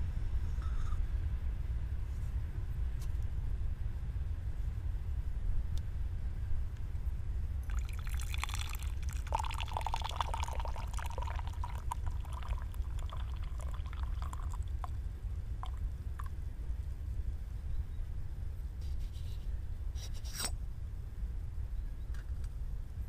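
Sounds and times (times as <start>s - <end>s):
steady low rumble: 0.0s - 20.0s
liquid dripping: 7.6s - 15.0s
tea pouring into a cup: 7.6s - 16.3s.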